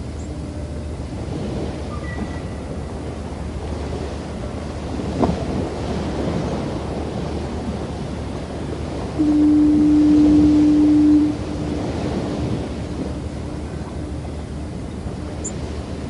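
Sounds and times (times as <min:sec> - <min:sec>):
surf washing on beach: 0:00.9 - 0:16.0
low foghorn blast: 0:08.3 - 0:16.0.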